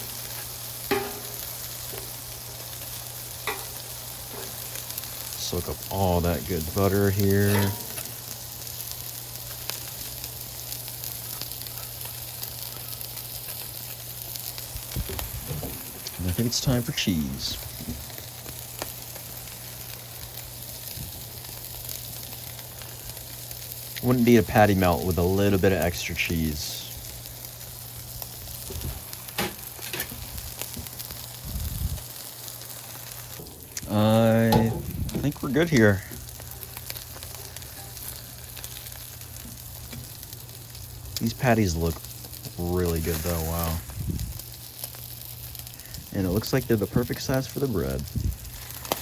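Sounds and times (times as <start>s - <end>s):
food sizzling on a griddle: 0.0s - 49.0s
low hum: 32.9s - 41.4s.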